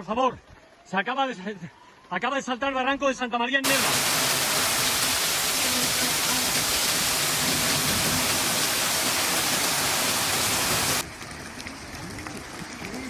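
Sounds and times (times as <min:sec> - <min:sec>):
floodwater rushing: 0:03.6 - 0:13.0.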